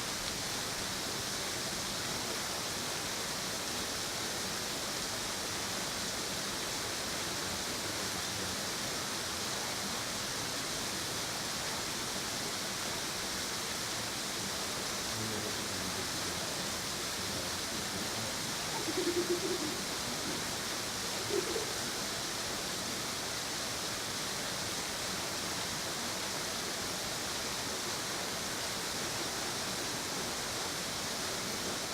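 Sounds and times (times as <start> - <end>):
waterfall rushing: 0.0 - 31.9
faint pitched sounds: 15.2 - 21.9.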